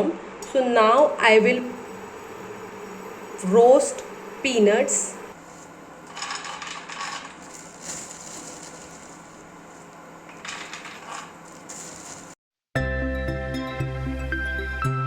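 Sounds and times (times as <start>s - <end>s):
peanuts rattling in frying pan: 5.4s - 12.4s
steady hiss: 7.0s - 12.4s.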